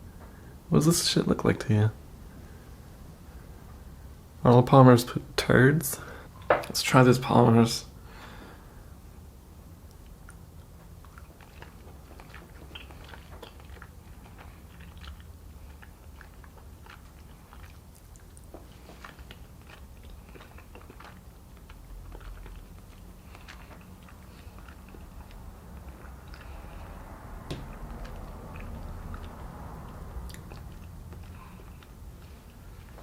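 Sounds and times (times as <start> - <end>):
low steady hum: 0.0 - 33.0
mouth clicks chewing: 9.8 - 27.0.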